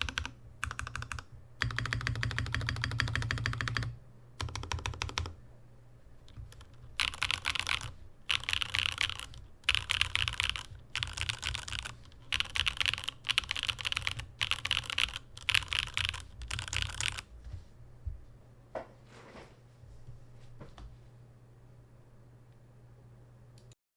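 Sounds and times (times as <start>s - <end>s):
mechanical keyboard typing: 0.0s - 5.4s, 6.3s - 17.2s.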